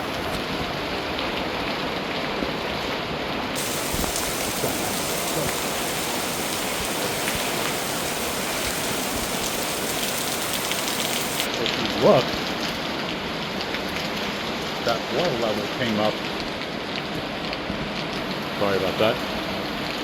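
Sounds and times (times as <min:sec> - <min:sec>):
heavy rain falling: 0:03.6 - 0:11.5.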